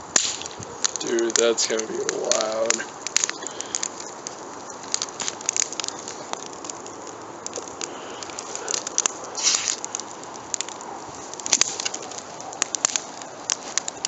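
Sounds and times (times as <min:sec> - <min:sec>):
bonfire crackling: 0:00.0 - 0:14.0
fire hiss: 0:00.0 - 0:14.0
fire popping: 0:00.0 - 0:14.0.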